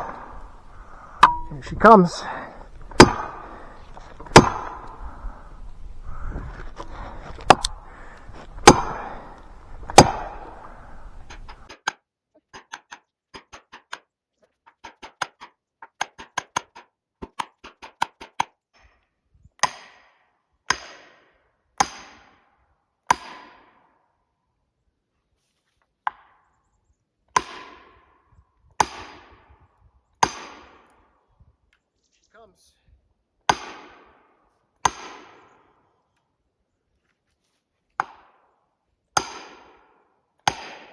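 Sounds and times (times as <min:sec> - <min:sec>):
hammer striking steel wedges: 0:01.2 - 0:05.2, 0:06.8 - 0:11.8.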